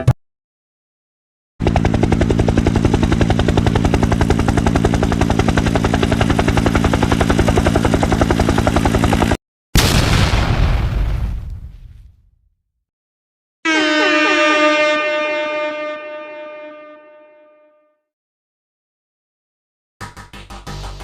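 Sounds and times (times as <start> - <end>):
helicopter rotor chop: 1.6 - 9.4, 20.0 - 21.0
explosion: 9.8 - 12.4.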